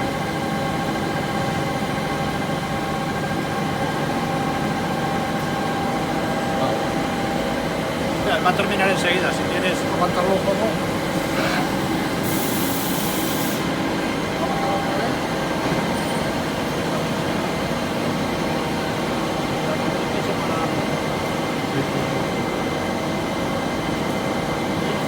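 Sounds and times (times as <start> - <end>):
lathe machine hum: 0.0 - 15.7.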